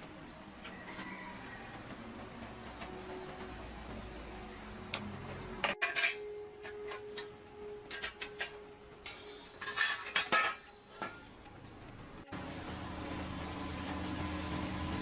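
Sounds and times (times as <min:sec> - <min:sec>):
tools clinking on bicycle parts: 0:04.9 - 0:11.2.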